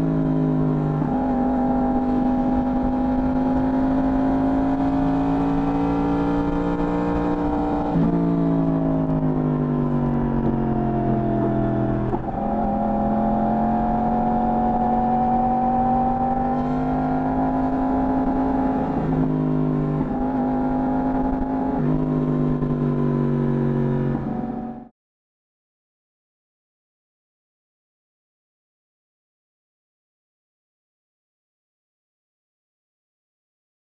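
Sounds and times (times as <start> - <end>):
motorcycle engine revving: 0.2 - 9.5, 10.1 - 24.9.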